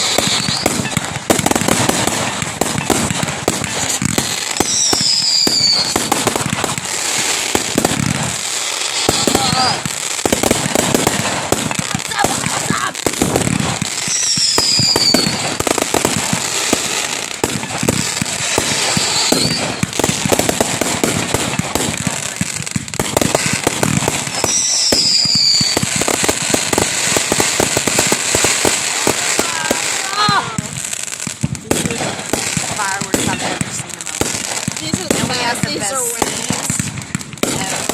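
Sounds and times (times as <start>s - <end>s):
falling firework whistles: 0.0s - 2.1s, 2.7s - 10.4s, 13.0s - 21.2s, 23.2s - 28.8s
fireworks crackling: 0.0s - 37.9s.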